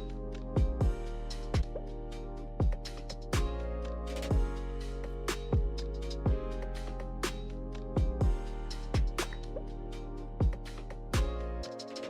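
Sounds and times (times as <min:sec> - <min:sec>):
kick drum thumps: 0:00.6 - 0:01.0, 0:02.6 - 0:02.8, 0:03.4 - 0:03.6, 0:04.3 - 0:04.5, 0:05.5 - 0:05.7, 0:06.3 - 0:06.5, 0:08.0 - 0:08.4, 0:09.0 - 0:09.2, 0:10.4 - 0:10.6, 0:11.2 - 0:11.4.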